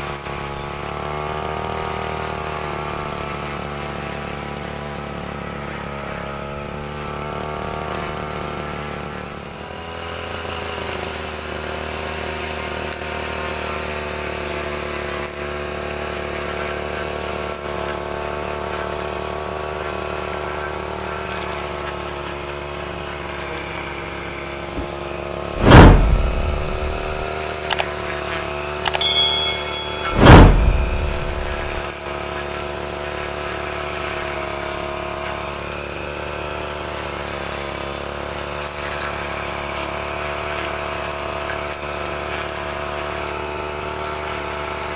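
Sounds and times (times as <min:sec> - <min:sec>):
brush cutter engine running: 0:00.0 - 0:25.5
loud sudden thumps: 0:24.7 - 0:27.3, 0:28.9 - 0:31.8
brief metallic ring: 0:25.6 - 0:27.8, 0:28.8 - 0:31.9.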